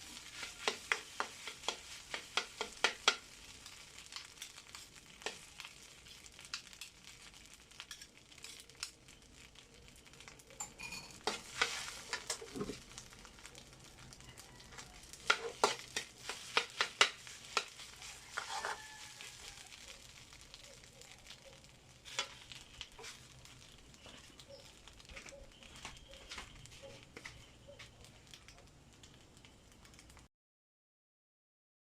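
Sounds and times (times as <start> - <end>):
spatula scraping a pan: 0.0 - 6.4, 10.6 - 12.8, 14.8 - 20.1, 21.2 - 27.9
rice sizzling in a pan: 0.0 - 30.3.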